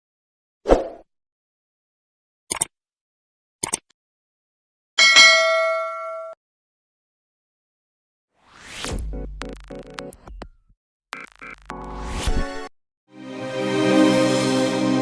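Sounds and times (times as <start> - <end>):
bell-like chime: 5.0 - 6.4.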